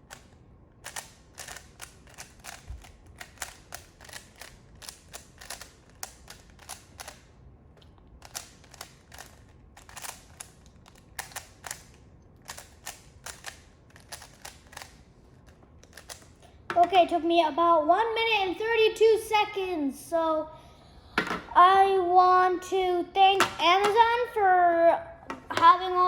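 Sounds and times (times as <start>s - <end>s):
puzzle cube clicking: 0.1s - 7.2s, 8.2s - 15.0s.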